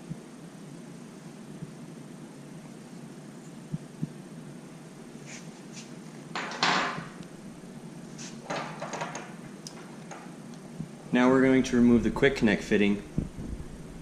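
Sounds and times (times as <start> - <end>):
clicks and knocks of fittings: 8.5 - 10.3.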